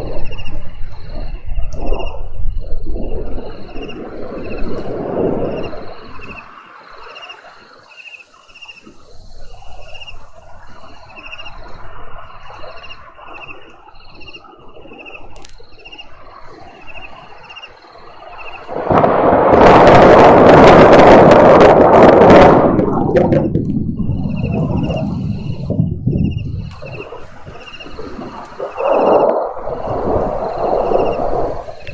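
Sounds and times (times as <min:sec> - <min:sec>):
thunder rumble: 0:00.0 - 0:06.6, 0:14.8 - 0:31.9.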